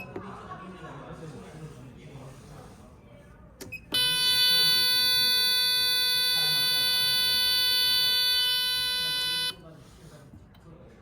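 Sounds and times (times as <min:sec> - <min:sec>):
fire alarm buzzer: 0:03.9 - 0:09.6.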